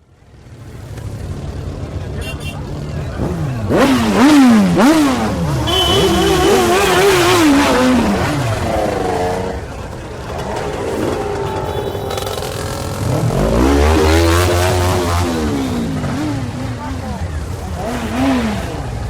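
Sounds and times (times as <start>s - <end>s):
motorcycle engine revving: 0.3s - 19.0s.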